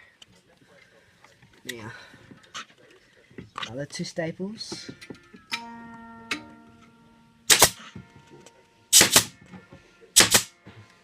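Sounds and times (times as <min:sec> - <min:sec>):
ringing metallic tone: 0:05.4 - 0:09.9
staple gun snapping into wood: 0:10.2 - 0:10.5.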